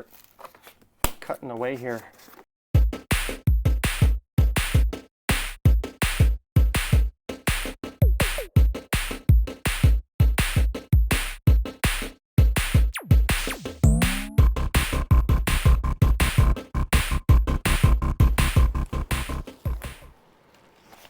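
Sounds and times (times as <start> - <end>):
electronic music with heavy bass: 12.8 - 20.1.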